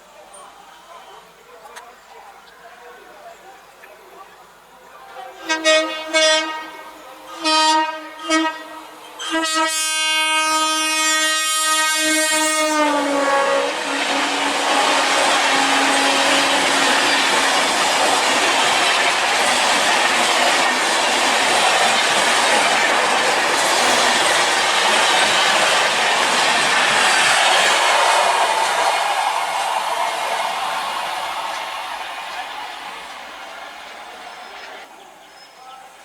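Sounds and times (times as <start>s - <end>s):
train coaches roaring past: 0.0s - 36.0s
locomotive horn: 5.4s - 17.8s.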